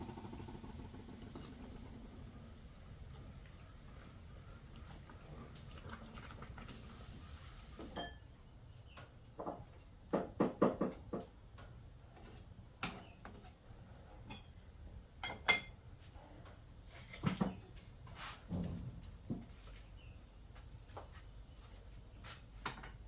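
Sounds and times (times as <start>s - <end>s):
high insect drone: 0.0s - 5.7s.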